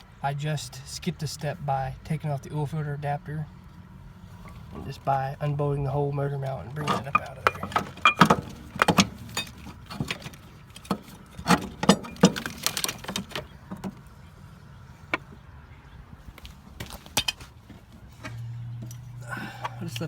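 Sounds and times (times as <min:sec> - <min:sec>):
metal tools clinking: 0:06.4 - 0:13.5, 0:16.8 - 0:17.5.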